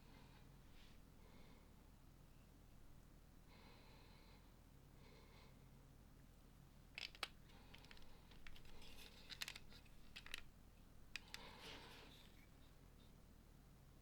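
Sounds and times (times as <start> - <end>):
plastic bricks clicking together: 7.0 - 10.5, 11.1 - 12.2.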